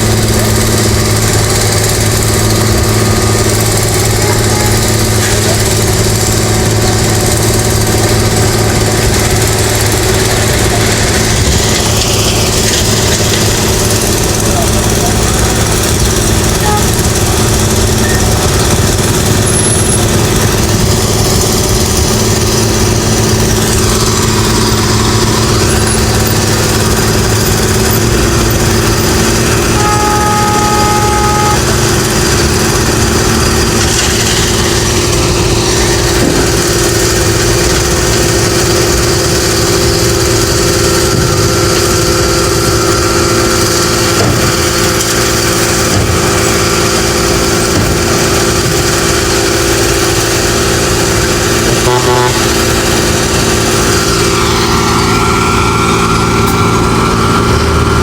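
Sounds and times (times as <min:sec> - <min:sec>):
heavy machine engine running: 0:00.0 - 0:58.0
two-note tone: 0:16.5 - 0:18.7, 0:29.5 - 0:33.0, 0:51.8 - 0:52.5.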